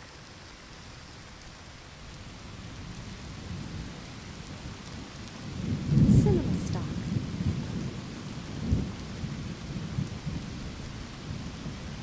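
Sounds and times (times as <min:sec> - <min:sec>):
steady rain falling: 0:00.0 - 0:12.0
low rolling thunder: 0:02.8 - 0:12.0.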